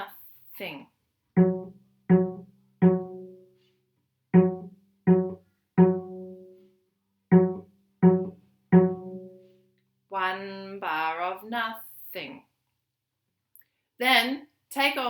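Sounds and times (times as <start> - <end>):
cello plucked pizzicato: 1.4 - 3.5, 4.3 - 6.6, 7.3 - 9.5.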